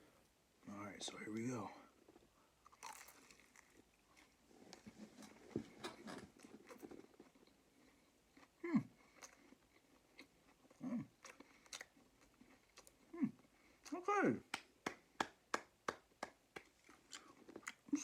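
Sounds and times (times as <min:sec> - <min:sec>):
chewing crispy fried chicken: 0:02.1 - 0:14.0, 0:16.6 - 0:18.0.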